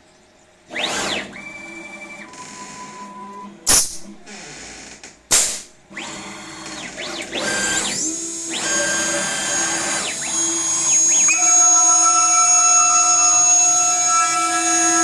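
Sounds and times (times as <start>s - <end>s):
cnc spindle whining: 5.9s - 15.0s.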